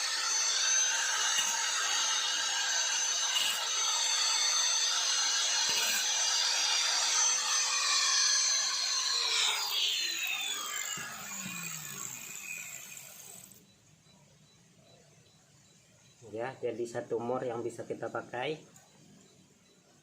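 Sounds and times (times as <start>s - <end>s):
power tool whining and cutting: 0.0s - 13.6s.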